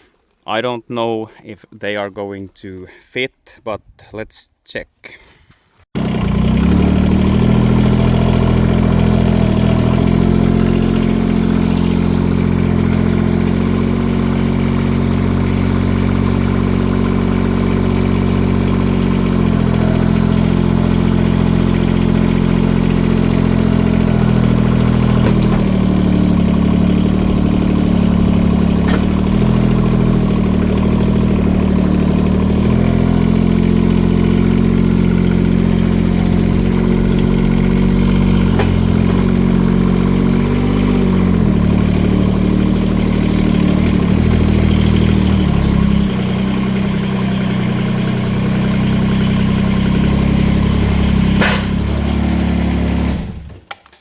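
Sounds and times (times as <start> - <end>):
engine running: 6.0 - 53.6.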